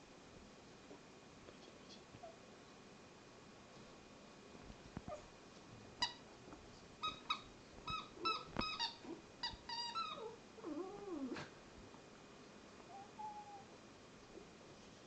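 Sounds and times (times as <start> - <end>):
dog whining: 5.0 - 5.3, 7.0 - 11.5, 12.9 - 13.8
squeaky toy squeaking: 6.0 - 6.2, 7.0 - 10.3
dog chewing rubber toy: 7.0 - 10.2.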